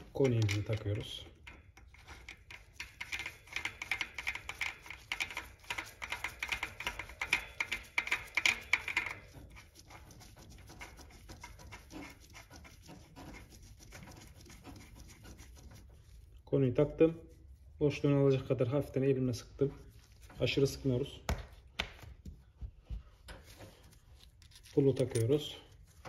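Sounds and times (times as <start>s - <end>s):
metallic clicking and rattling: 0.0s - 9.4s, 24.4s - 25.6s.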